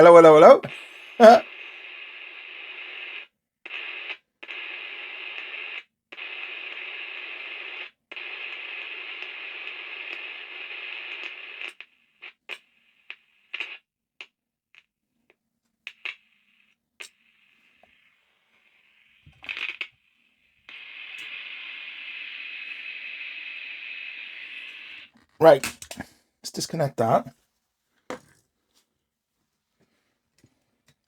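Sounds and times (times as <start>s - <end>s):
radio crackles and bursts: 0.0s - 2.1s, 20.7s - 27.3s
radio static hiss: 0.0s - 2.4s, 20.7s - 27.3s.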